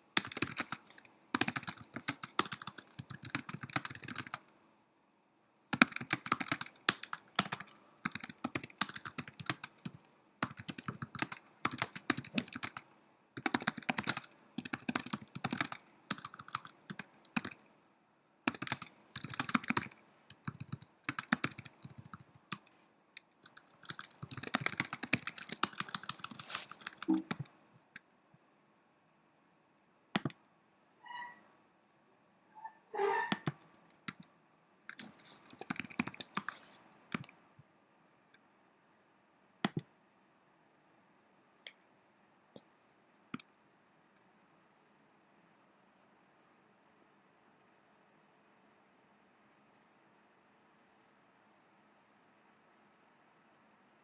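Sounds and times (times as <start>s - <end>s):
laptop keyboard typing: 0.1s - 4.6s, 5.7s - 17.7s, 18.4s - 27.6s, 30.2s - 30.4s, 33.3s - 34.3s, 34.9s - 37.4s, 39.6s - 39.9s.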